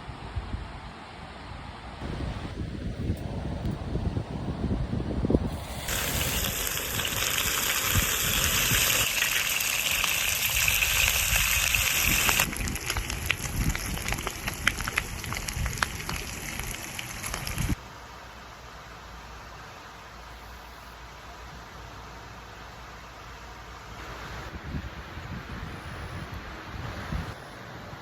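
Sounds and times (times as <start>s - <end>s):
wind rumble on microphone: 1.5s - 9.1s, 10.2s - 17.8s, 24.1s - 28.0s
fat crackling and popping: 5.5s - 17.8s
meat sizzling on a grill: 5.5s - 17.8s.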